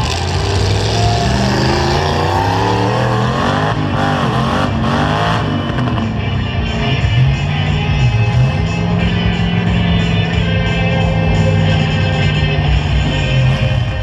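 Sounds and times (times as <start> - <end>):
heavy low rumble: 0.0 - 14.0
music playing: 0.0 - 14.0
truck engines revving: 0.0 - 14.0.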